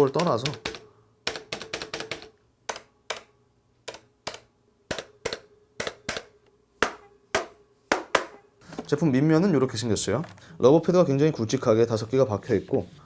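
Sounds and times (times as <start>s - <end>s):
mechanical keyboard keys clacking: 0.0s - 2.8s.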